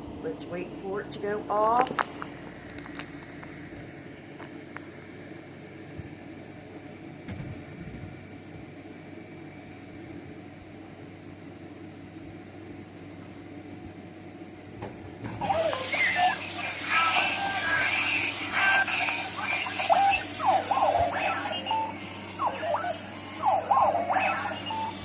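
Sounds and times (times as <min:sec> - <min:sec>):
mechanical room hum: 0:00.0 - 0:25.0.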